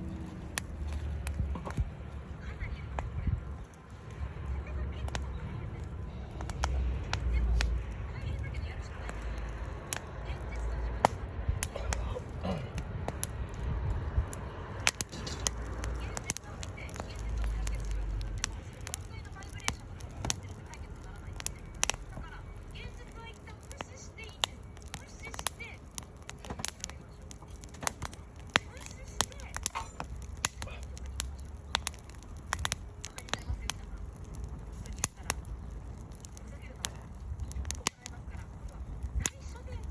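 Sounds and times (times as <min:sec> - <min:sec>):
low rumble: 0:00.0 - 0:28.6
wood fire crackling: 0:00.0 - 0:39.9.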